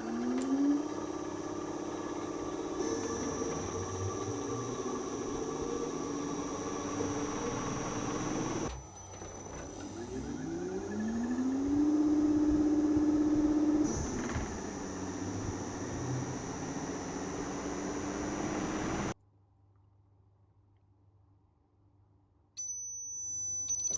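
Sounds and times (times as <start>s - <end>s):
compressor whine rising: 0.0s - 19.2s.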